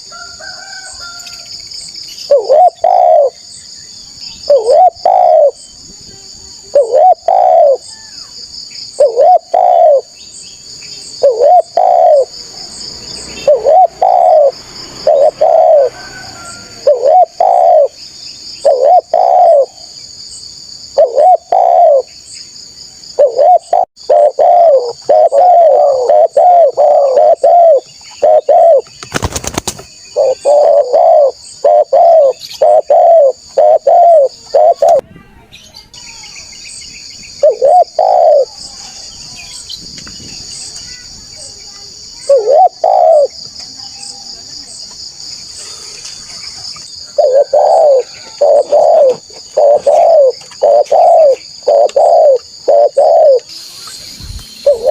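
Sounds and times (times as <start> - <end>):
high insect drone: 0.0 - 35.0, 35.6 - 54.9
dove cooing: 2.3 - 3.4, 4.5 - 5.6, 6.6 - 7.9, 8.9 - 10.2, 11.2 - 12.8, 13.4 - 18.0, 18.6 - 20.0, 20.9 - 22.1, 23.2 - 28.9, 30.1 - 35.0, 37.4 - 38.6, 42.2 - 43.4, 47.0 - 53.5, 54.6 - 54.9.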